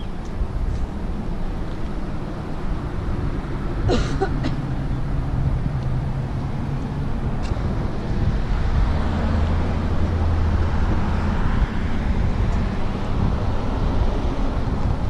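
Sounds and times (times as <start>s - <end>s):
vehicle engine hum: 0.0s - 15.0s.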